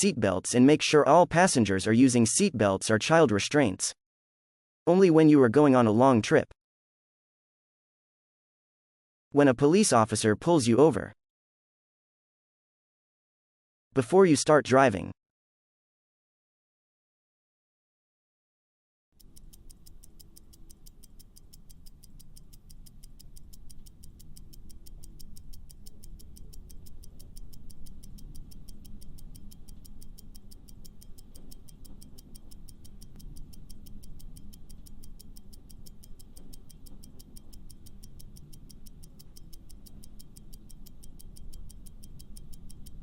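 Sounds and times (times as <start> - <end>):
clock ticking fast: 19.2 - 43.0.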